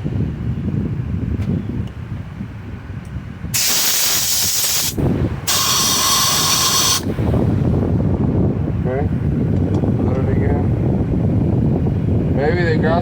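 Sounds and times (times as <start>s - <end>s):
compressed air blasts: 3.5s - 7.5s.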